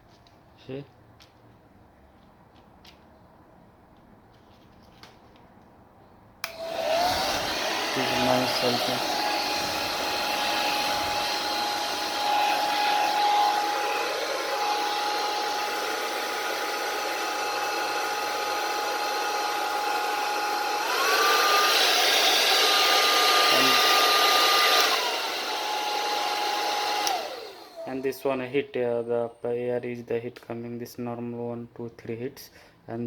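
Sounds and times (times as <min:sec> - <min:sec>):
hair dryer blowing with a whine: 0:06.4 - 0:28.2.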